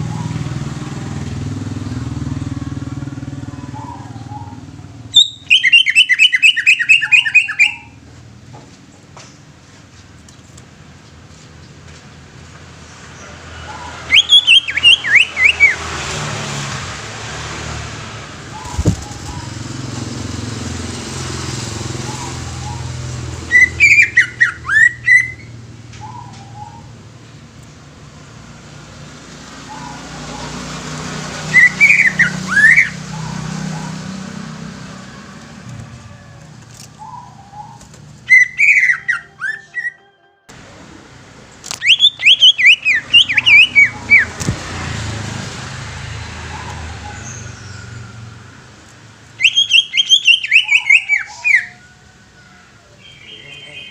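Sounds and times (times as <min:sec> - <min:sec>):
bird whistling phrases: 0:03.5 - 0:08.0, 0:13.7 - 0:15.8, 0:22.0 - 0:26.9, 0:31.5 - 0:33.9, 0:37.0 - 0:40.1, 0:41.8 - 0:44.3, 0:49.4 - 0:51.9.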